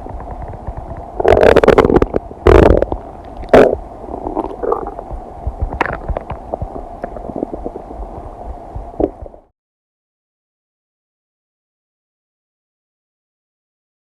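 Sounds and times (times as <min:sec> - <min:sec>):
stomach gurgling and rumbling: 0:00.0 - 0:09.5.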